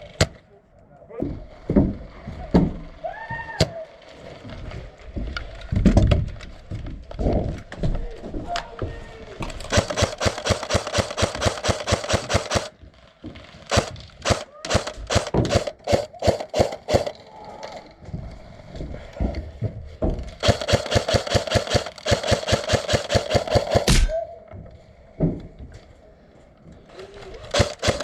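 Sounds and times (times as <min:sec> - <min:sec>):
airsoft gun firing: 0:09.4 - 0:12.8, 0:13.7 - 0:17.2, 0:20.4 - 0:24.2, 0:27.5 - 0:28.0.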